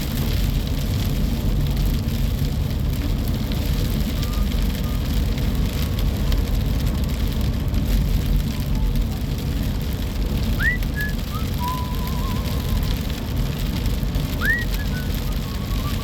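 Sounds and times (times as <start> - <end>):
rain pattering: 0.0 - 16.0.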